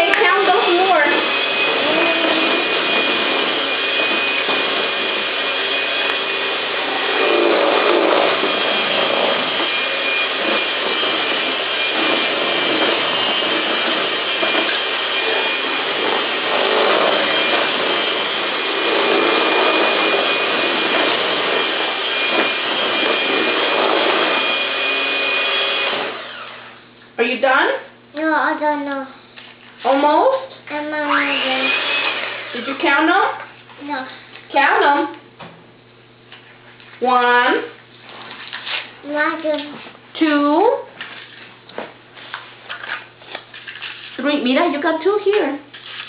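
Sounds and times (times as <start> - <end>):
electric mixer running: 0.0 - 27.0, 30.0 - 35.1.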